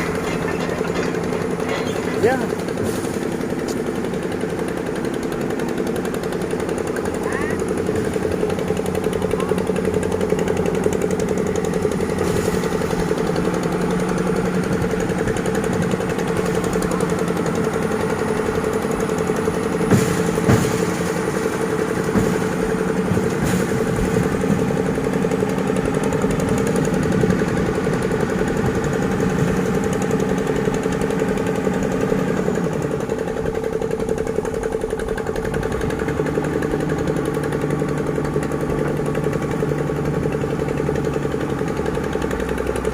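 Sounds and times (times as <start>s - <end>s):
diesel excavator engine running: 0.0s - 42.9s.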